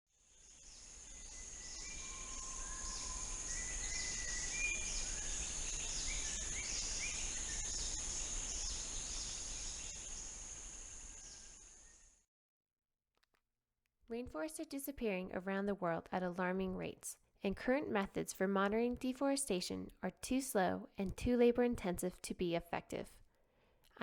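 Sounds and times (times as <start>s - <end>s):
insect drone: 0.2s - 12.2s.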